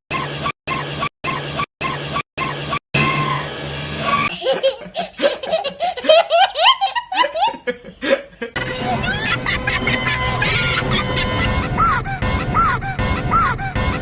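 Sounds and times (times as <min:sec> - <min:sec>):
high-pitched cartoon laughter: 0:04.3 - 0:07.8, 0:08.5 - 0:14.0
background music: 0:08.6 - 0:14.0.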